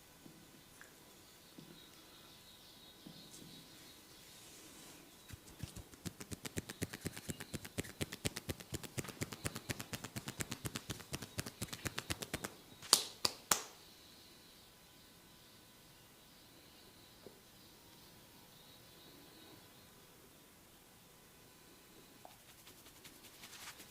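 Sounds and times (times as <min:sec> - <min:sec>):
hands tapping on head: 0:05.3 - 0:13.8
sharp cracks: 0:05.3 - 0:13.8.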